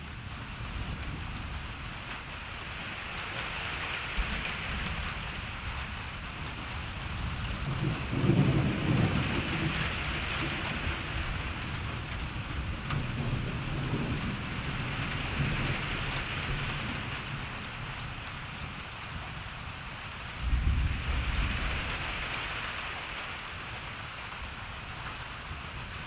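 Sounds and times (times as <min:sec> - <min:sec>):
steady rain hissing: 0:00.0 - 0:26.0
thunder rumbling: 0:04.2 - 0:18.8, 0:20.2 - 0:23.9.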